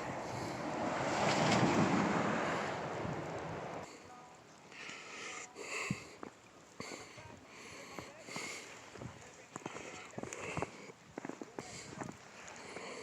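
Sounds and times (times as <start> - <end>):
wind rushing across microphone: 0.0 - 3.9.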